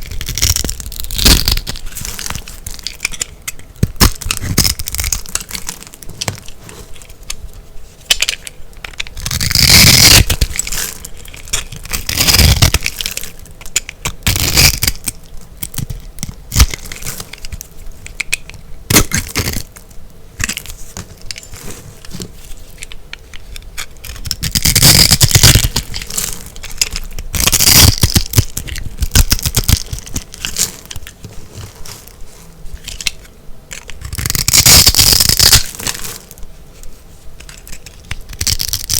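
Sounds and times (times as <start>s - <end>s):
dried soap crunching: 0.0s - 19.8s, 20.4s - 38.9s.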